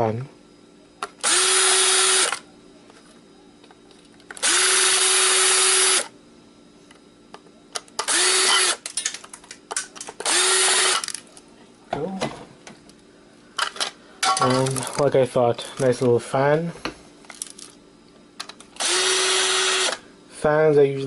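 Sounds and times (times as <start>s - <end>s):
power drill whining: 1.2s - 2.4s, 4.4s - 6.1s, 8.0s - 8.8s, 10.2s - 11.1s, 18.8s - 20.0s.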